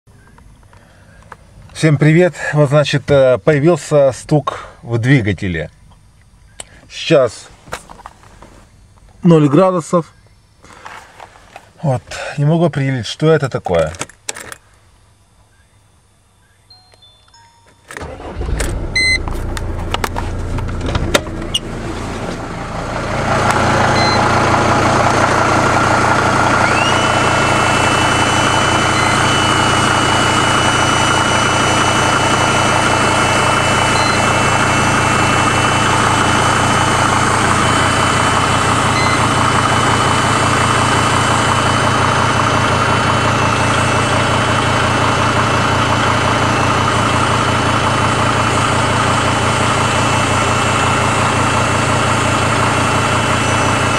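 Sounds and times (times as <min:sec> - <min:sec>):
engine clicks: 0:17.9 - 0:21.7
diesel engine idling: 0:18.0 - 0:53.9
faint steady whistle: 0:26.6 - 0:29.8.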